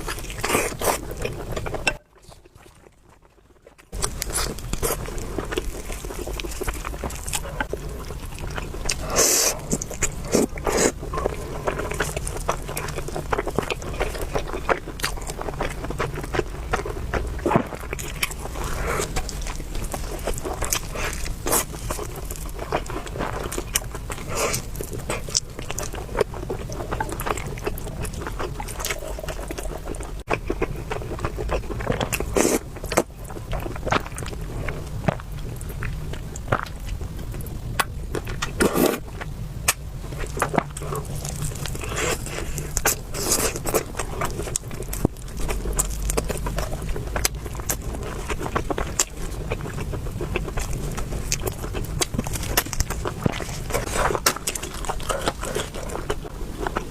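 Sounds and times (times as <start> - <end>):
slurping: 0.0 - 2.7, 3.9 - 16.4, 17.2 - 30.3
wet chewing: 0.0 - 56.9.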